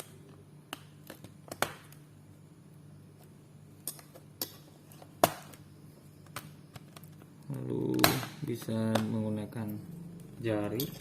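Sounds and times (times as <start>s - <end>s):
plastic snapping: 0.7s - 2.0s.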